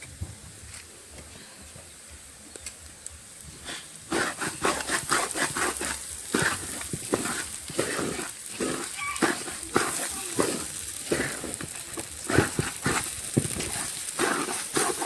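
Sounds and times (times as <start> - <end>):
animal calling: 8.6 - 9.6.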